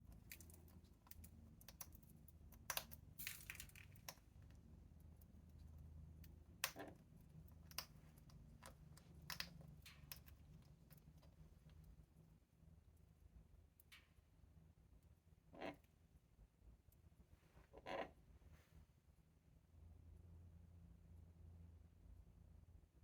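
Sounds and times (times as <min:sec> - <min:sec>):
parrot crunching food pellets: 0:00.0 - 0:11.9.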